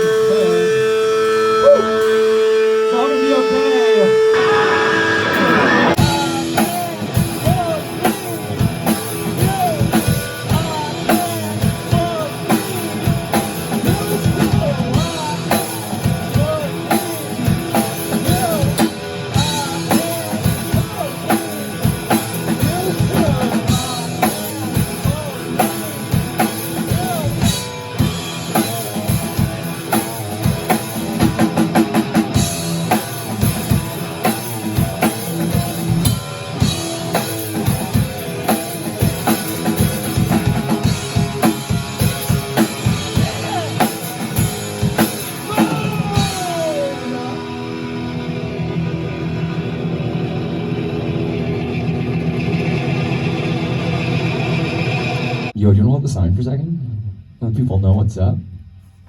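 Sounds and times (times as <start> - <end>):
rock music: 4.3 - 55.6
drum kit beat: 6.0 - 47.4.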